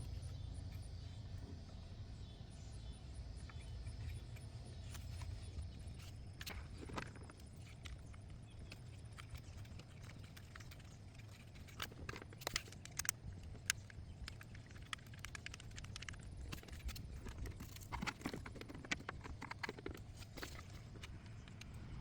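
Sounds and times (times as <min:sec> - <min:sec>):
steady low hum: 0:00.0 - 0:22.0
tools clicking and knocking: 0:08.7 - 0:21.7.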